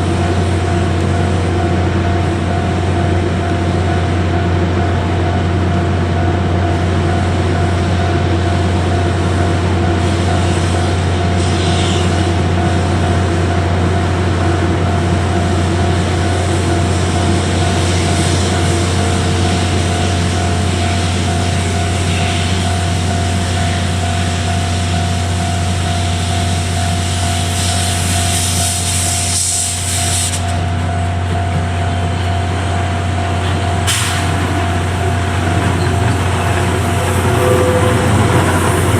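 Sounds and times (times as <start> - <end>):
train running with whine: 0.0 - 38.9.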